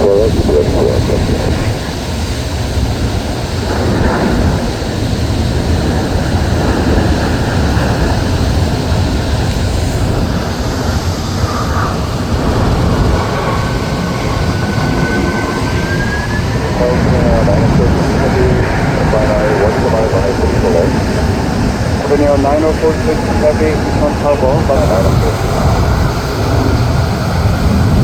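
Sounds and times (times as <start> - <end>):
jet airliner engines rumbling: 0.0 - 28.0.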